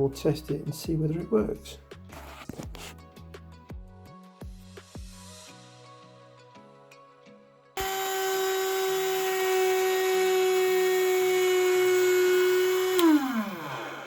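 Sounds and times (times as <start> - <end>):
electric motor high whine: 7.8 - 14.0.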